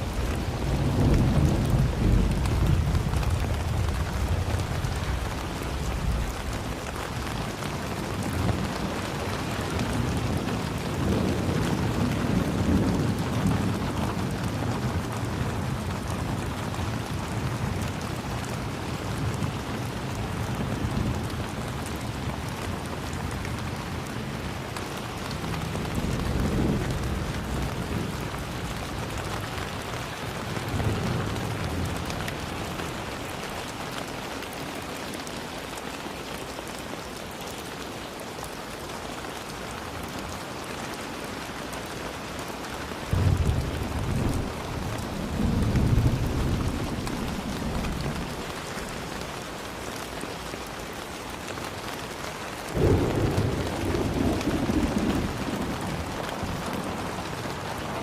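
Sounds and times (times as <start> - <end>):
thunder rumbling: 0.0 - 18.2, 18.8 - 33.6, 43.1 - 49.6, 52.8 - 58.0
steady rain falling: 0.0 - 58.0.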